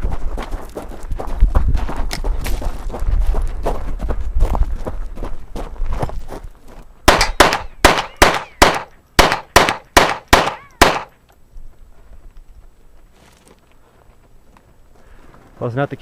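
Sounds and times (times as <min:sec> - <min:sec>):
pistol shots: 0:07.1 - 0:11.2.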